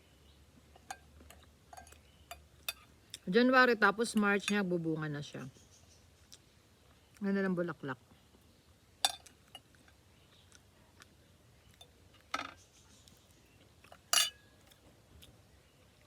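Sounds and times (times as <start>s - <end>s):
utensil clinking against dish: 14.1s - 14.4s.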